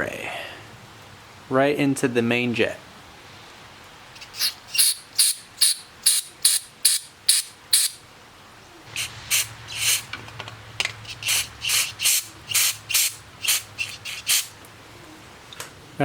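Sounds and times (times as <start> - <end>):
aerosol spray hissing bursts: 4.2 - 8.0, 9.0 - 10.1, 11.1 - 14.5.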